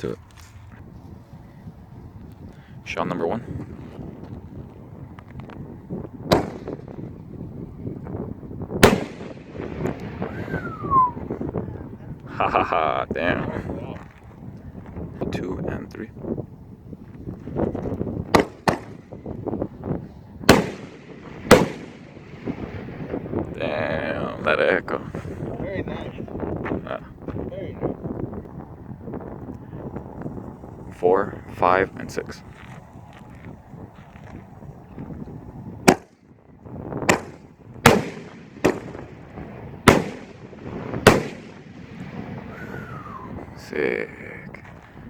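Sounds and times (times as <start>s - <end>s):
firework launch pops: 6.3s - 7.0s, 8.8s - 10.7s, 18.3s - 19.1s, 20.5s - 23.2s, 37.0s - 42.5s
firework bangs echoing: 6.3s - 7.2s, 8.8s - 10.7s, 18.3s - 19.2s, 20.4s - 23.6s, 37.0s - 43.4s.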